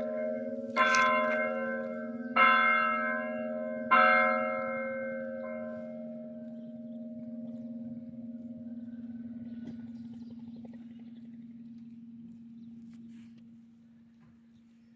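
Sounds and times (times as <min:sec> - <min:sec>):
church bell strikes: 0:00.0 - 0:10.1
low hum of bells: 0:00.0 - 0:14.9.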